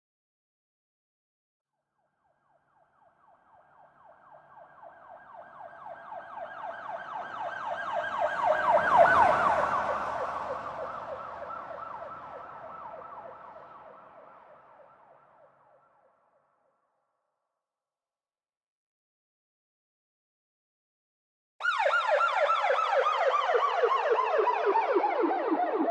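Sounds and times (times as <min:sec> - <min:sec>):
police siren yelping: 0:03.8 - 0:14.3, 0:21.6 - 0:25.9
low road rumble: 0:05.0 - 0:14.4.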